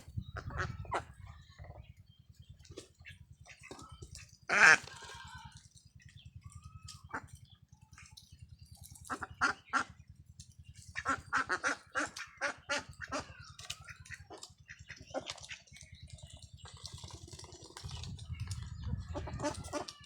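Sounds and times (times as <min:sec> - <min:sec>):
ducks quacking: 0:00.0 - 0:01.9, 0:03.0 - 0:05.6, 0:09.0 - 0:10.0, 0:10.8 - 0:16.0, 0:18.8 - 0:20.0
low pulsing hum: 0:00.0 - 0:20.0.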